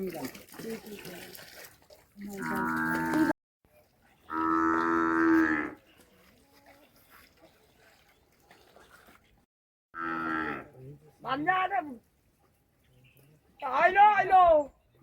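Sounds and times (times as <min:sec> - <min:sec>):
cattle mooing: 0:02.4 - 0:03.3, 0:04.3 - 0:05.8, 0:10.0 - 0:10.7.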